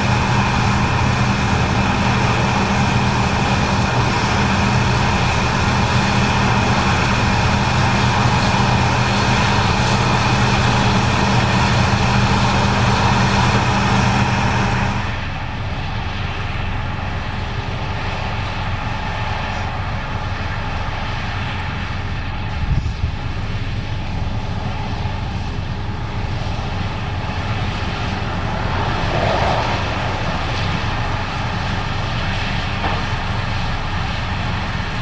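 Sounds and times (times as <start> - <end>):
machinery hiss: 0.0 - 15.3
combine harvester engine drone: 0.0 - 35.0.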